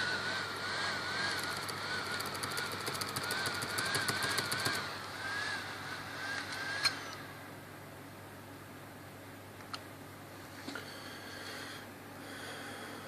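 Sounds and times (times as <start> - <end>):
laptop fan whine wavering: 0.0 - 13.0
rapid faint ticking: 1.4 - 4.8.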